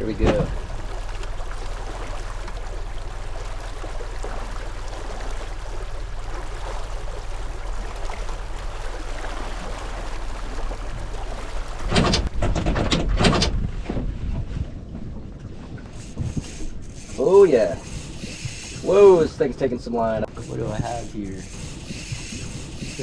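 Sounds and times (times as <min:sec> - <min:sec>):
low motor hum: 0:00.0 - 0:17.1
water splashing past boat hull: 0:00.0 - 0:23.0.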